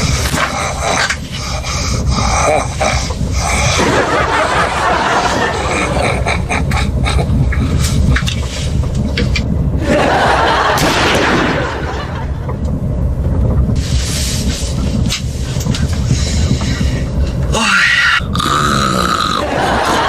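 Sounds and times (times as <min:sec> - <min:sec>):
man snoring heavily: 0:00.0 - 0:04.3, 0:17.5 - 0:19.6
train carriage rumble: 0:00.0 - 0:20.0.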